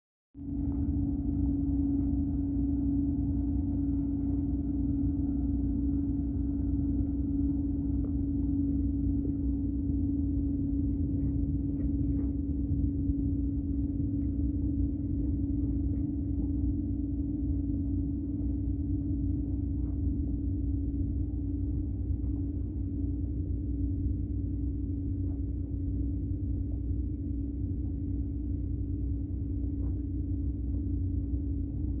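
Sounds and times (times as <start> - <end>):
ferry engine droning: 0.4 - 22.9.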